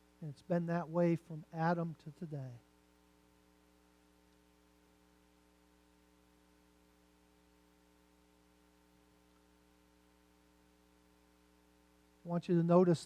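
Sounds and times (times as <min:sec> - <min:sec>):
faint electrical hum: 0:00.0 - 0:13.0
light hiss: 0:07.0 - 0:12.9.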